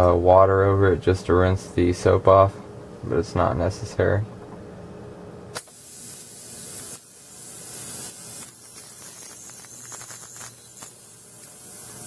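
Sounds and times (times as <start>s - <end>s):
ultrasonic cleaner hissing whine: 4.8s - 12.0s.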